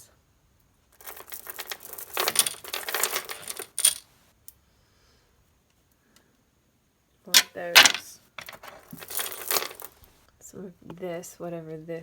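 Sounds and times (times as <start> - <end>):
glass beads clattering: 1.0 - 4.0, 7.4 - 9.9.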